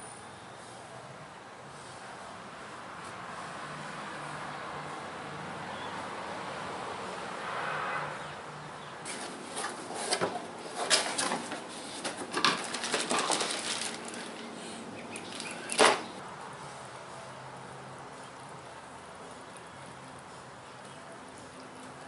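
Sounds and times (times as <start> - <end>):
packaging rustling and crinkling: 9.1 - 14.6.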